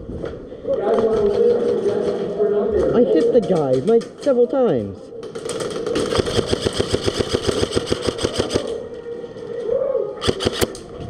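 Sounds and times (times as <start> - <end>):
airsoft gun firing rapidly: 5.6 - 8.8, 10.2 - 10.9.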